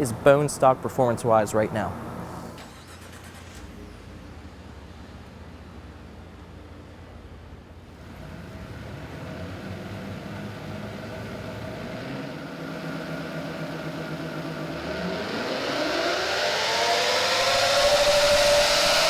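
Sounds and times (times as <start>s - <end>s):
truck engine revving under load: 7.9s - 19.0s.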